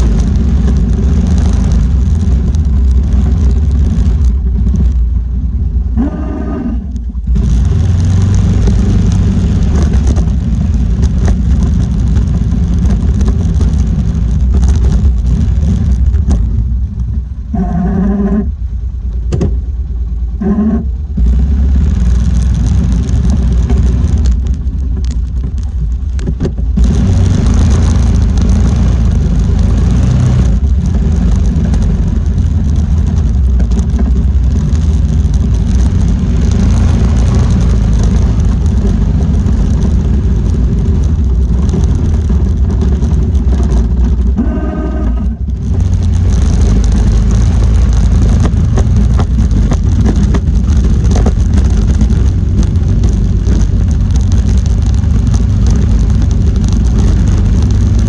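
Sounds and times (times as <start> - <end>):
four-wheeler engine running: 0.0 - 58.0.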